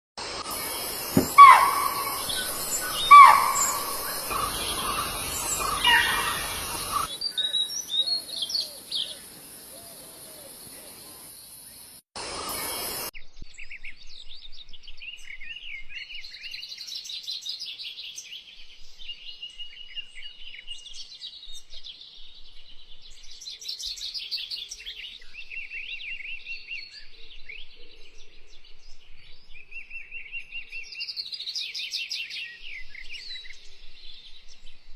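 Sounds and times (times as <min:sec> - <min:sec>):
small birds chirping and trilling: 0:00.5 - 0:34.9
bird calls falling in pitch: 0:00.6 - 0:07.1.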